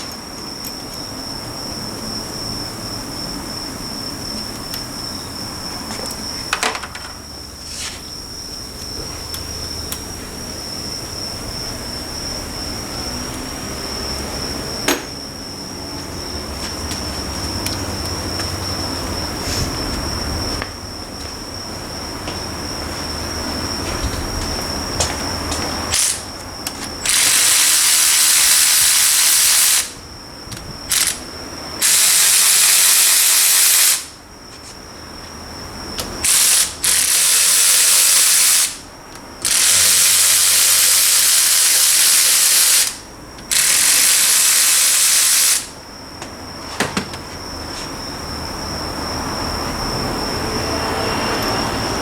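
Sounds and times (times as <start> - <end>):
compressed-air tool hissing: 25.9 - 26.3, 27.0 - 30.0, 31.8 - 34.2, 36.2 - 45.8.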